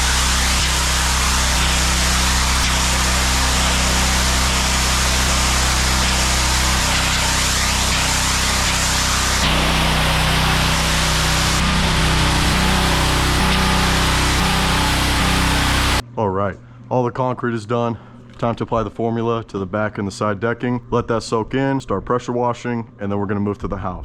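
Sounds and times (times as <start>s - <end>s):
pressure washer engine drone: 0.0s - 16.0s.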